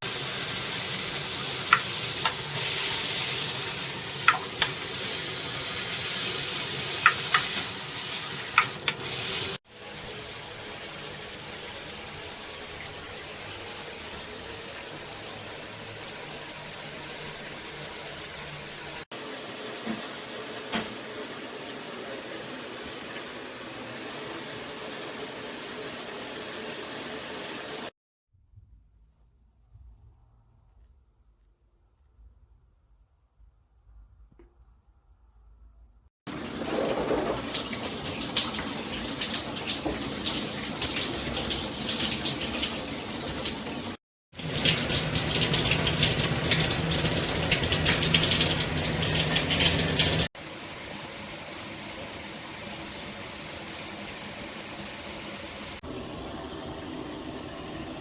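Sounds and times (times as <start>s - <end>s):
shower head spraying water: 0.0s - 11.2s, 36.3s - 55.8s.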